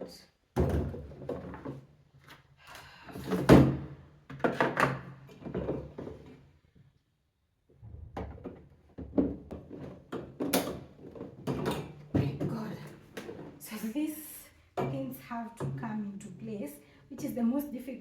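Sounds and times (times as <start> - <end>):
chair parts knocking and clunking: 8.2 - 13.6.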